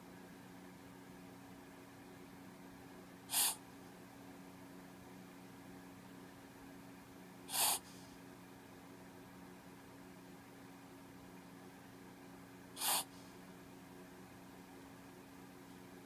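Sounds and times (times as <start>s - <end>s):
dog sniffling: 3.3s - 3.6s, 7.5s - 8.1s, 12.8s - 13.3s
dog snorting: 3.3s - 3.6s, 7.5s - 7.8s, 12.8s - 13.1s.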